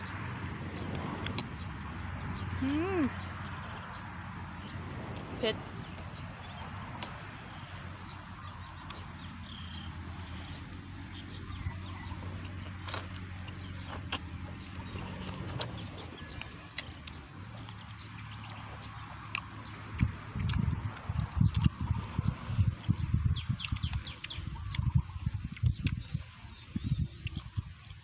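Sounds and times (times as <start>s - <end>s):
low motor hum: 0.0s - 28.0s
clicks and crunches of eating: 0.8s - 1.6s, 8.5s - 9.7s, 11.5s - 28.0s.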